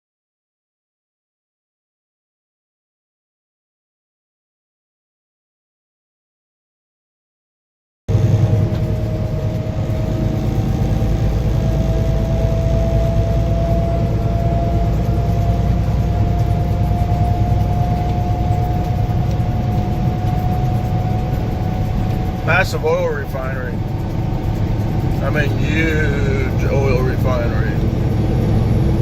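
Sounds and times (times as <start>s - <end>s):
thin whine rising in pitch: 8.1s - 29.0s
truck engine and road noise: 8.1s - 29.0s.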